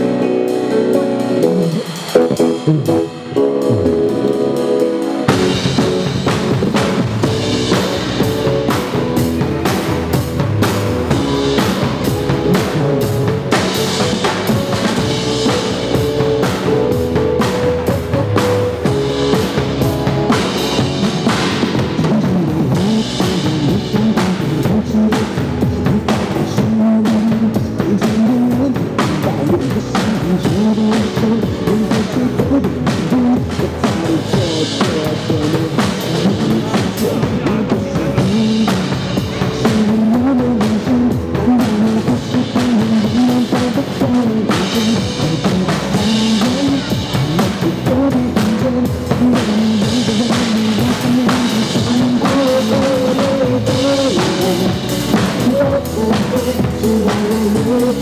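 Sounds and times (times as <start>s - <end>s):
backing track music: 0.0s - 58.0s
drum kit rock beat: 0.0s - 58.0s.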